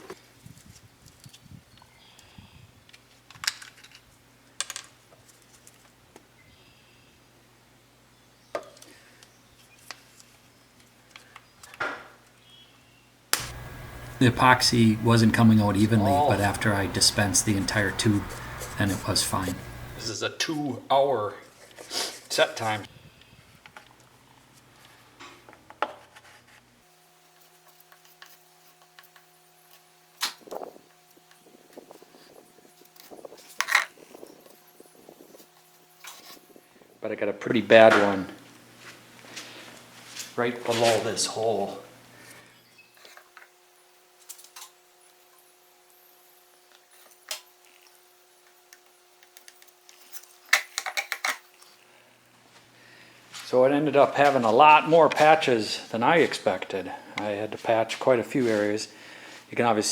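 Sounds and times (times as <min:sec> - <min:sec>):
sharp clicks: 0:13.4 - 0:20.0
faint steady hum: 0:13.4 - 0:20.2
scrape: 0:21.5 - 0:22.4, 0:26.0 - 0:26.6, 0:39.3 - 0:41.0, 0:58.4 - 0:58.7.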